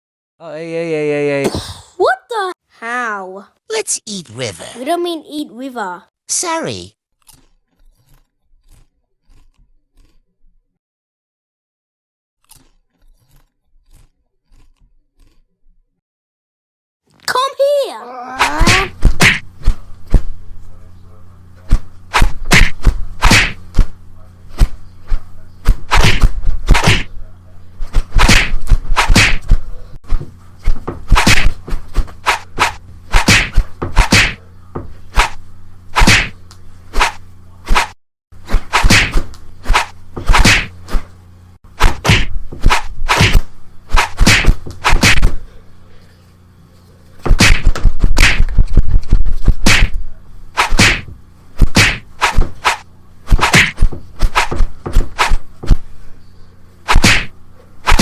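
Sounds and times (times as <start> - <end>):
crunchy bites and chews: 7.2 - 10.2, 12.4 - 15.5
loud sharp whacks: 18.4 - 19.5, 22.1 - 23.6, 25.6 - 27.1, 28.1 - 29.6, 31.1 - 31.6, 32.2 - 34.4, 35.1 - 35.4, 36.0 - 36.4, 37.0 - 41.0, 41.8 - 45.4, 47.3 - 48.6, 49.6 - 50.0, 50.6 - 55.8, 56.9 - 58.0.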